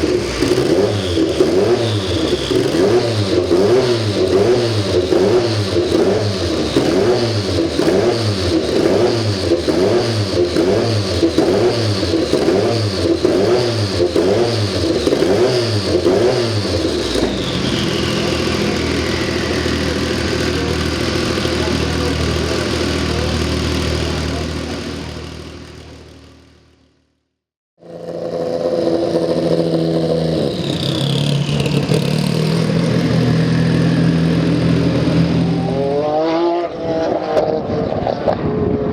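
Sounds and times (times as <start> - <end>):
race car engine revving and idling: 0.0 - 27.0, 27.8 - 38.9
high falling whine: 16.6 - 23.3.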